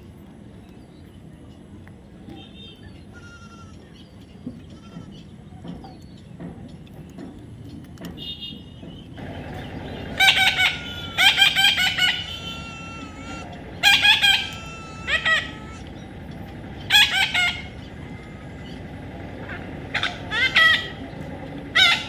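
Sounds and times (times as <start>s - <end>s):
loud bird calls: 6.8s - 22.0s
faint chirping: 8.7s - 22.0s.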